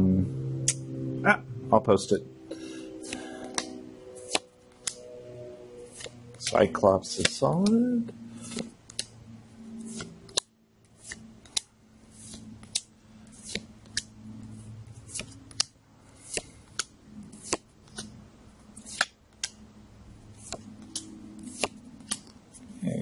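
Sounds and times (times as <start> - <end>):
soft rustle of cards: 5.8 - 19.6, 20.2 - 22.8
cards snapping off a deck: 16.3 - 18.1.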